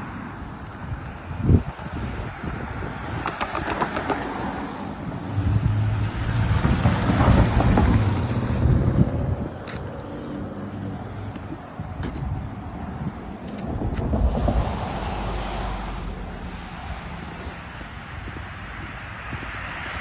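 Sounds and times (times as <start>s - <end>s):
outdoor street noise: 0.0s - 20.0s
vehicle engine passing by: 4.0s - 11.0s.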